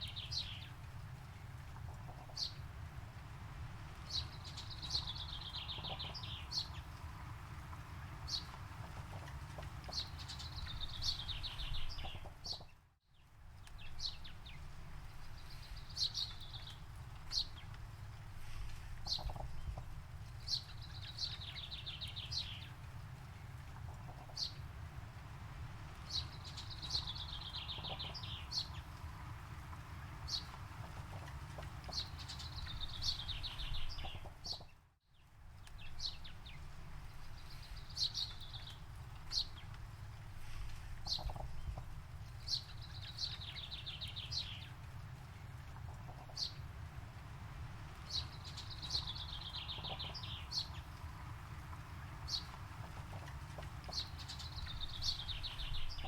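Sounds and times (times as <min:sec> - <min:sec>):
bird chirps: 0:04.1 - 0:06.8, 0:19.0 - 0:19.8, 0:26.1 - 0:28.8, 0:41.0 - 0:44.7, 0:48.1 - 0:51.0.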